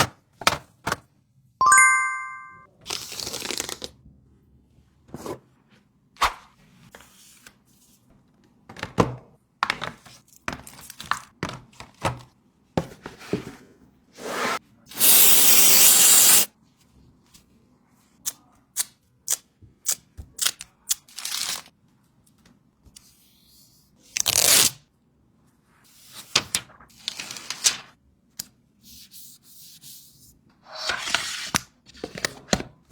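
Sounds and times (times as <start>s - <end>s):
short chime-like tone: 1.6s - 2.6s
hiss: 15.0s - 16.5s.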